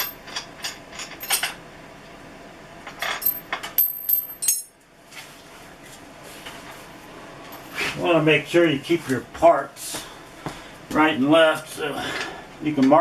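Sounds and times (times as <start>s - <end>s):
metal parts clinking: 0.0s - 1.6s, 2.9s - 4.8s.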